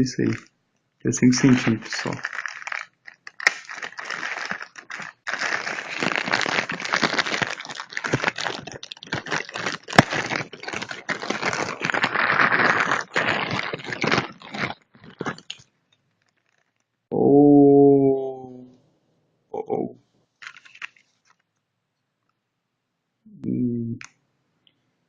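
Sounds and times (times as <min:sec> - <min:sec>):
plastic packaging crinkling: 0:00.1 - 0:00.5, 0:01.2 - 0:16.9, 0:20.4 - 0:21.5.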